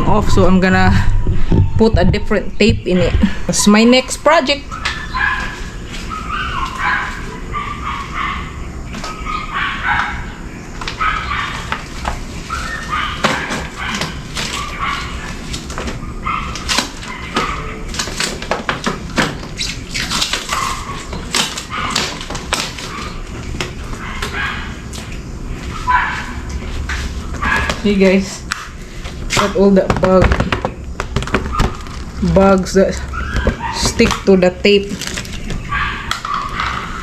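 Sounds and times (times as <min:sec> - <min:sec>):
dog whimpering and yipping: 0:04.7 - 0:10.3, 0:33.0 - 0:34.2, 0:35.6 - 0:37.0
clicks and crackles from handling: 0:10.8 - 0:25.2, 0:34.9 - 0:37.0.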